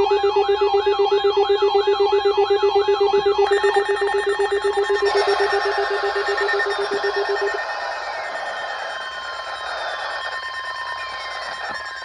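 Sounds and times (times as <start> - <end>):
warbling siren-like alert tone: 3.2 - 12.0.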